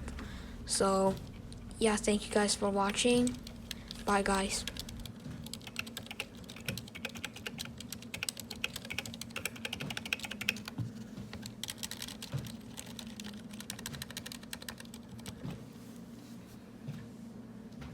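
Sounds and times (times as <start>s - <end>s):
mechanical keyboard typing: 2.8s - 10.8s, 11.4s - 15.4s.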